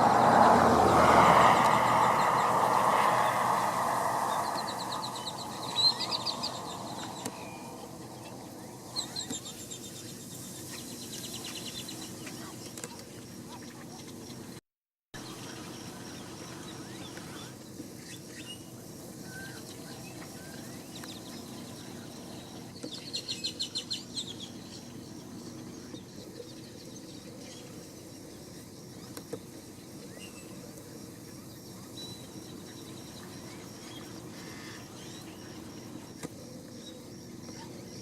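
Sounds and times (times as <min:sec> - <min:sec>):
faint bird chirps: 0:00.1 - 0:10.2.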